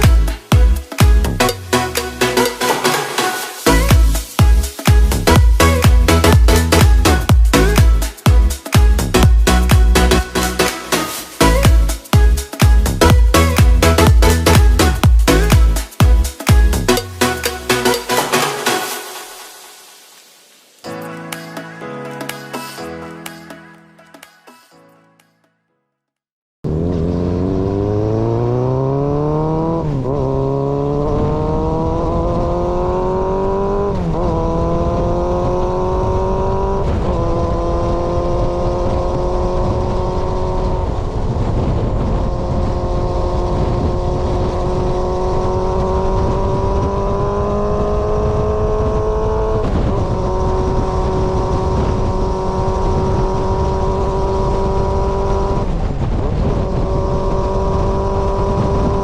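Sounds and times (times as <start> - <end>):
motorcycle engine accelerating: 0.0 - 18.6, 26.6 - 59.0
wind noise: 27.4 - 59.0.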